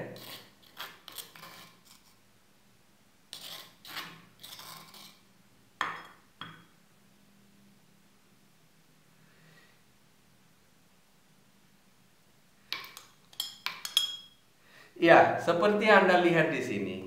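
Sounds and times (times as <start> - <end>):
utensil scraping paste from dish: 0.0 - 2.2, 3.3 - 5.2
utensil clinking against dish: 12.8 - 14.4.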